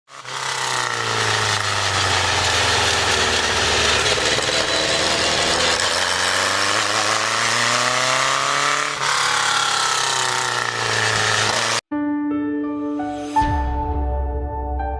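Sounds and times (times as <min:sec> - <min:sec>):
sports car engine revving: 0:00.2 - 0:11.8.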